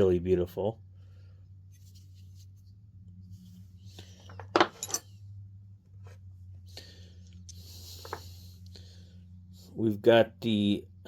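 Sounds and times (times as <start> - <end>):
low steady hum: 0.0 - 11.0
metal hand tools clinking: 4.3 - 5.1.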